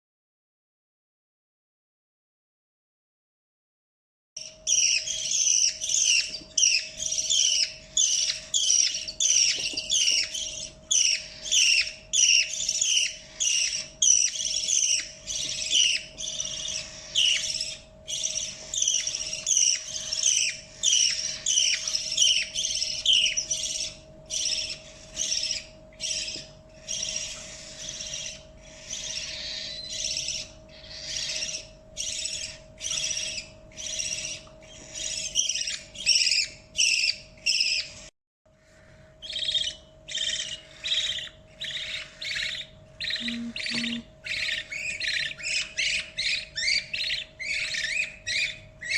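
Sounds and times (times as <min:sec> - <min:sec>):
budgie chick raspy begging chirps: 0:39.4 - 0:48.9.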